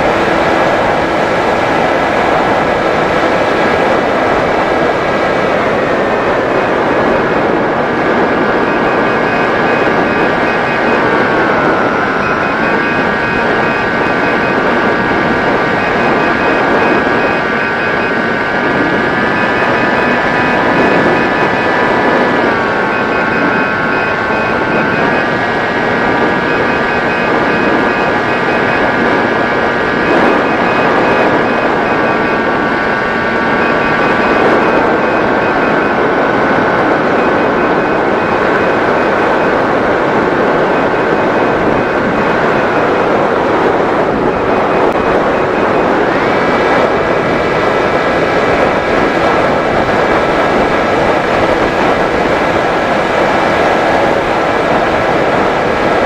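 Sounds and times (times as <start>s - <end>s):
air rush: 0.0s - 14.2s
model plane motor whining: 0.0s - 40.5s.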